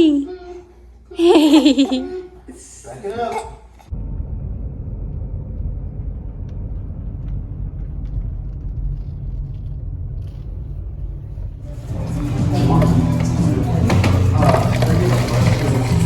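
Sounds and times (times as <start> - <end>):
car driving rumble: 3.9 - 16.0.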